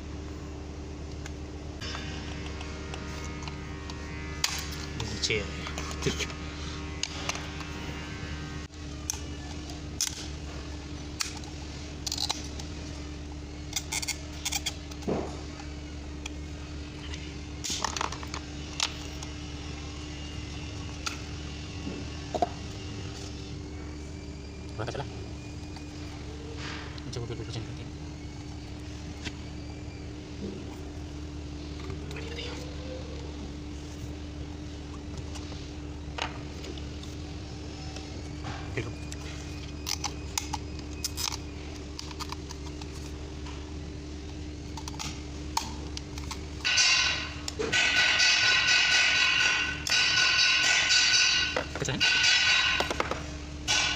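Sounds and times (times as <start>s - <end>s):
steady low hum: 0.0s - 53.9s
tools clicking and knocking: 44.7s - 53.9s.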